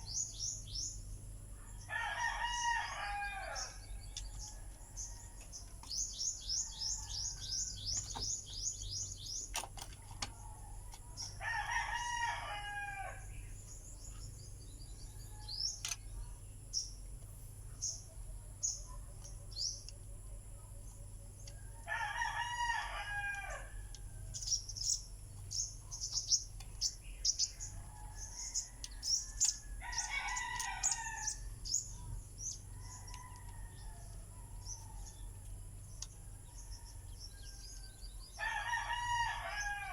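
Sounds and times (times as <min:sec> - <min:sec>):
small birds chirping: 0:00.0 - 0:39.9
steady low hum: 0:00.0 - 0:39.9
rooster crowing: 0:01.7 - 0:05.4, 0:10.5 - 0:13.3, 0:21.6 - 0:24.3, 0:27.6 - 0:31.6, 0:36.5 - 0:39.9.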